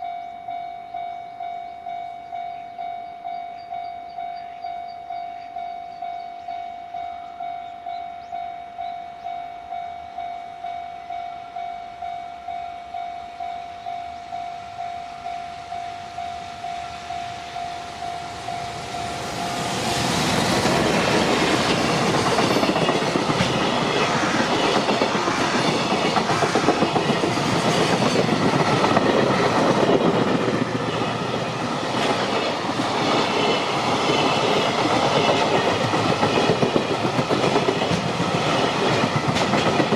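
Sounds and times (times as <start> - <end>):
level-crossing alarm clanging: 0.0 - 37.9
train passing: 0.0 - 39.9
wheels clicking over rail joints: 17.1 - 39.9.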